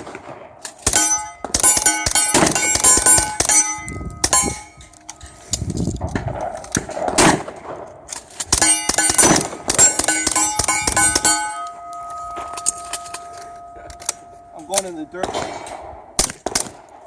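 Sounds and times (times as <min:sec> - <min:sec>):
steel plates clanging: 0:00.8 - 0:06.0, 0:08.2 - 0:15.8.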